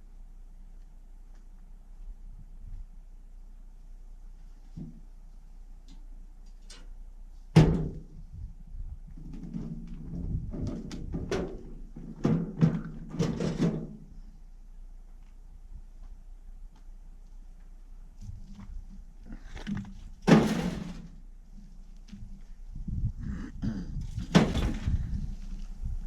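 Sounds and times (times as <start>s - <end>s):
cement knocked off stone wall: 20.2s - 21.2s, 24.2s - 25.1s.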